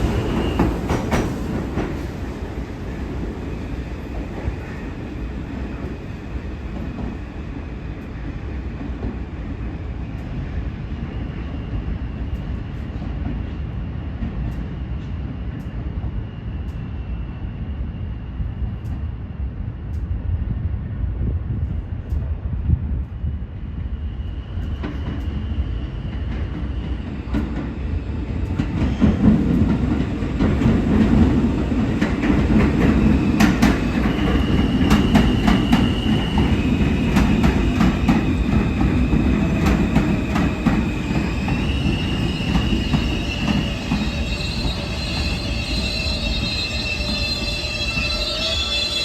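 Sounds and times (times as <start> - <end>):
subway train rumble: 0.0 - 49.0
thin wheel squeal: 41.6 - 49.0.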